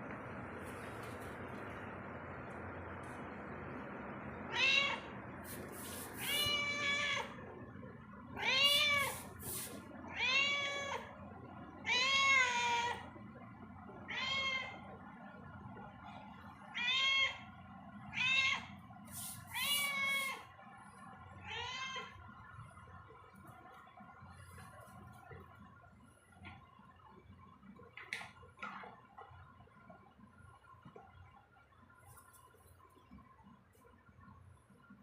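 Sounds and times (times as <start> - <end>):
cat meowing: 4.5 - 5.1, 6.2 - 7.4, 8.4 - 9.4, 10.1 - 11.1, 11.8 - 13.1, 14.1 - 14.8, 16.7 - 17.4, 19.4 - 20.4.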